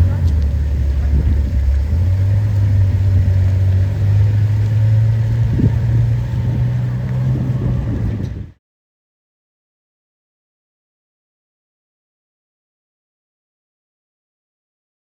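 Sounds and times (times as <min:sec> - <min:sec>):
car engine deep rumble: 0:00.0 - 0:08.6.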